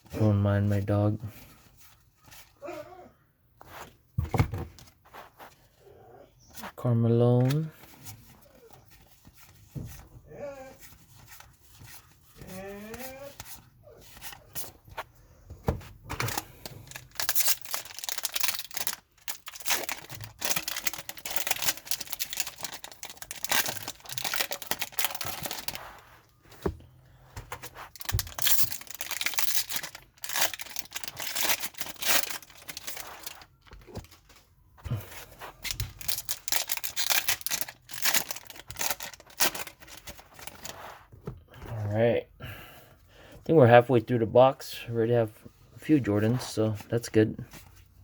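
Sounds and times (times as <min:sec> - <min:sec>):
card wrappers tearing and crinkling: 0:16.2 - 0:26.7, 0:27.5 - 0:34.4, 0:35.0 - 0:41.0.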